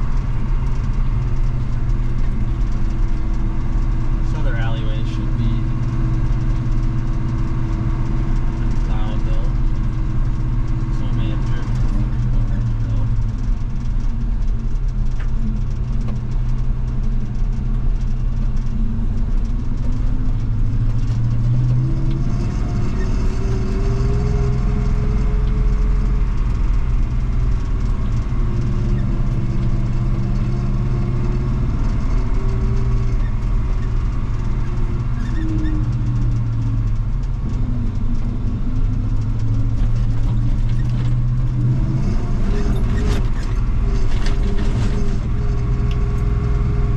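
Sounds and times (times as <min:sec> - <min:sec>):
pickup truck engine running: 0:00.0 - 0:46.9.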